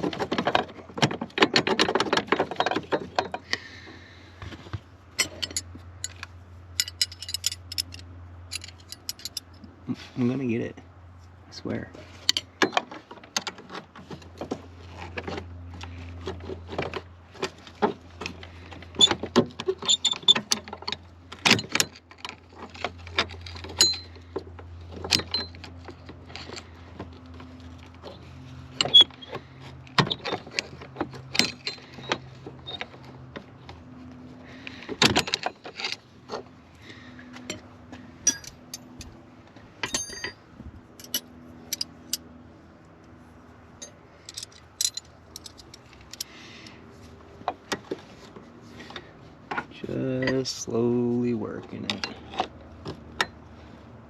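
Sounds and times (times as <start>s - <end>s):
hand tools clicking on metal: 5.2s - 9.6s, 38.2s - 39.1s.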